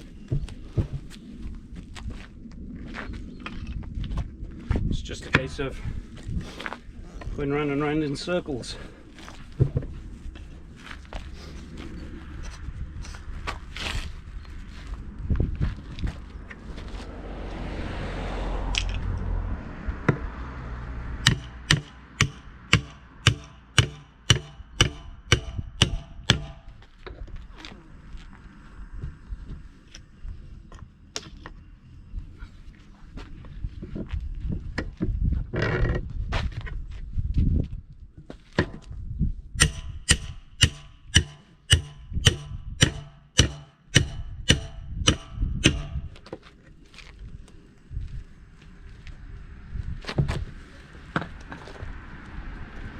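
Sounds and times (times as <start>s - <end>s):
hammer striking steel wheel rim: 21.2s - 26.7s, 39.6s - 46.2s.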